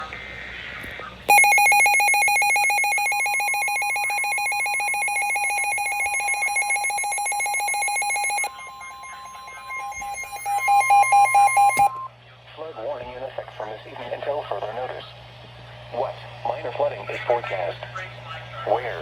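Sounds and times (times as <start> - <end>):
alarm beeping in harsh buzzer tone: 1.3 - 12.1
steady warning alarm tone: 1.3 - 12.1.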